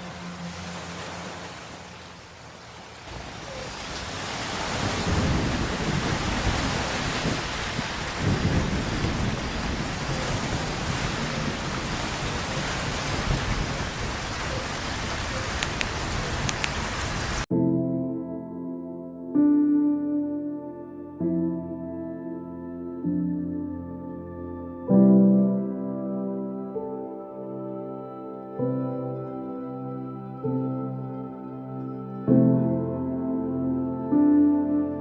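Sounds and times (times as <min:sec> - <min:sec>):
rain hiss: 0:00.0 - 0:17.5
rolling thunder: 0:04.6 - 0:14.4.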